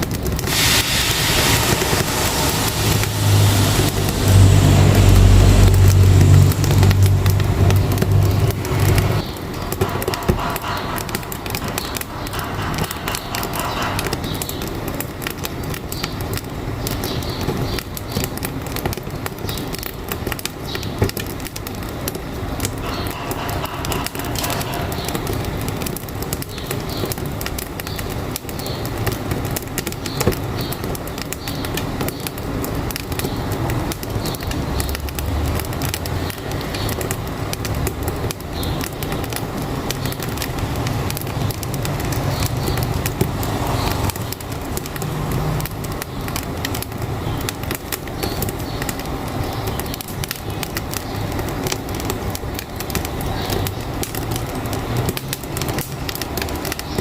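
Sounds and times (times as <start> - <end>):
wood fire crackling: 0.0 - 57.0
truck engine hum: 0.1 - 15.0.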